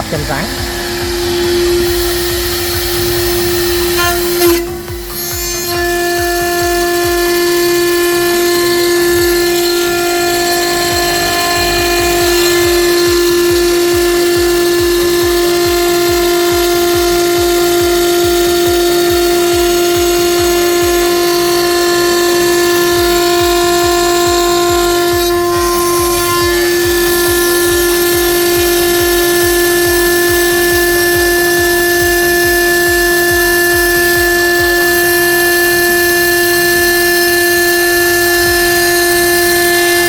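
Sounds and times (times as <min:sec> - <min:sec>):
metal cutting noise: 0:00.0 - 0:40.0
milling spindle whine: 0:00.0 - 0:40.0.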